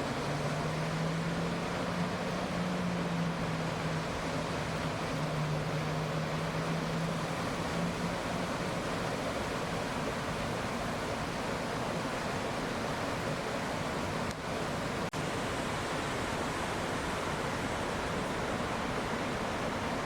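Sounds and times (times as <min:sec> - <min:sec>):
low steady hum: 0:00.0 - 0:11.7
stream and waterfall rushing: 0:00.0 - 0:20.0.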